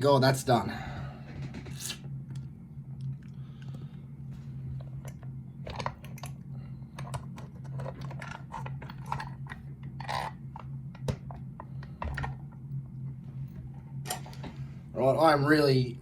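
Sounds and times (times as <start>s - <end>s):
steady low hum: 0.0s - 16.0s
lock and tools clicking and rattling: 7.0s - 10.4s.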